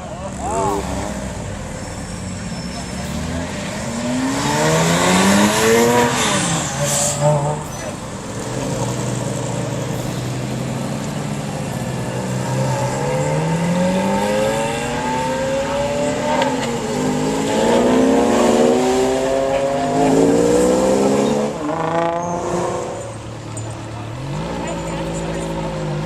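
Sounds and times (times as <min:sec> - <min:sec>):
sports car engine revving: 0:02.8 - 0:07.7, 0:10.6 - 0:26.0.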